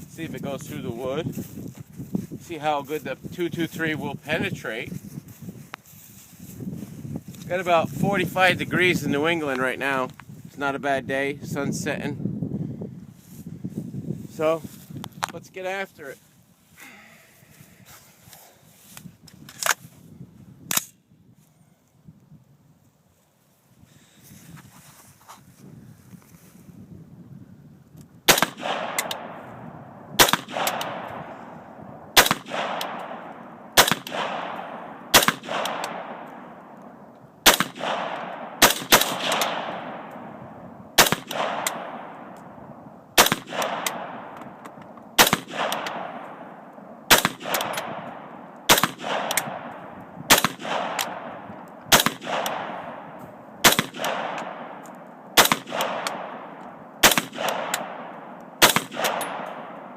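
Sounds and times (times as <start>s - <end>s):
rifle shots with echo: 28.3s - 59.9s.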